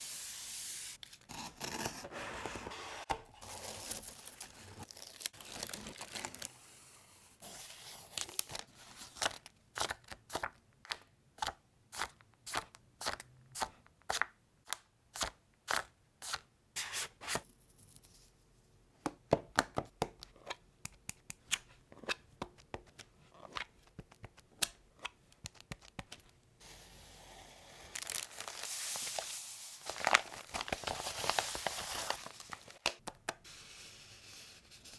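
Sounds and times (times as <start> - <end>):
packaging rustling and tearing: 3.4 - 6.6, 27.9 - 32.9.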